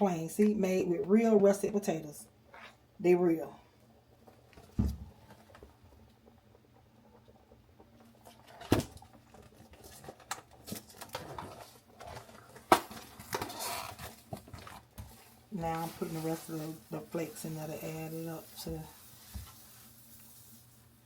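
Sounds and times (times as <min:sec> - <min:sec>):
packaging rustling: 0:08.3 - 0:16.9.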